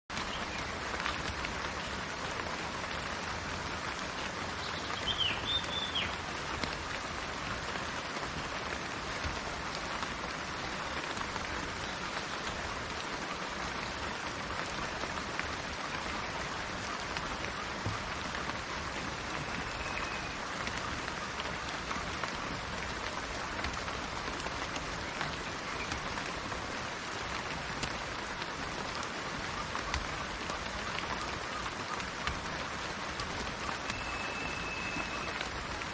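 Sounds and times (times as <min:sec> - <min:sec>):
rain pattering: 0:00.1 - 0:35.9
bird chirp: 0:04.6 - 0:06.2, 0:33.8 - 0:35.4.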